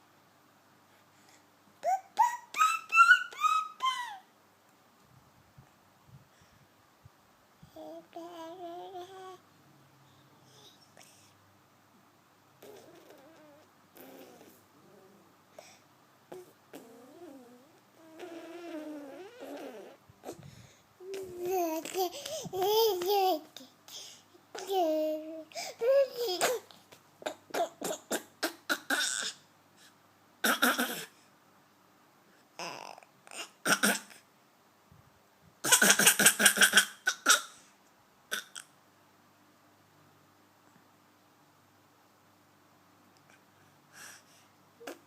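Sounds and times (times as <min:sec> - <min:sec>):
toddler babbling: 0:01.8 - 0:04.2, 0:07.8 - 0:09.4, 0:12.6 - 0:15.0, 0:16.3 - 0:20.4, 0:21.0 - 0:23.8, 0:24.5 - 0:28.2.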